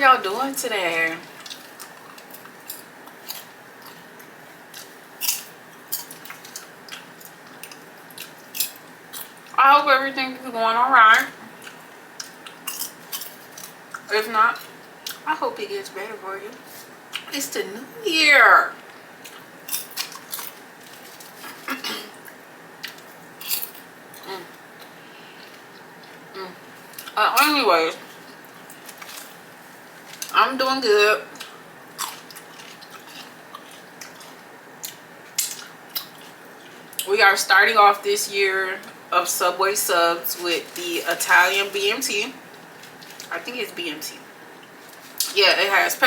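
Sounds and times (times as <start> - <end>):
sandwich crunching: 1.2 - 9.6, 11.5 - 15.2, 19.2 - 27.2, 28.0 - 30.4, 31.3 - 37.0, 42.5 - 43.3.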